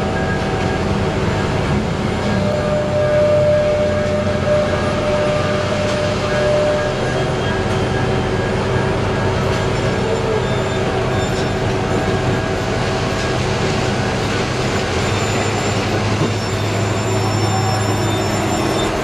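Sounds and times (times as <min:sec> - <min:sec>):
heavy machinery diesel engine drone: 0:00.0 - 0:19.0.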